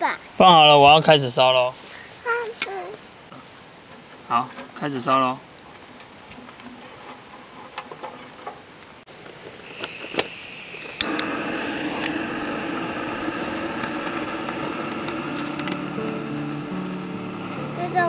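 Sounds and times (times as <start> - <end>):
steady rushing of stove fire: 3.2 - 18.0
stove lighter clicks: 9.7 - 16.2.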